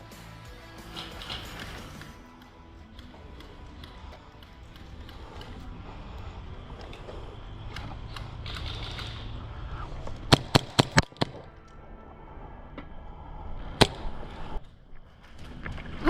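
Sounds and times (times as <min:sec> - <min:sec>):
gas pistol shots: 0:10.3 - 0:11.6, 0:13.8 - 0:14.2.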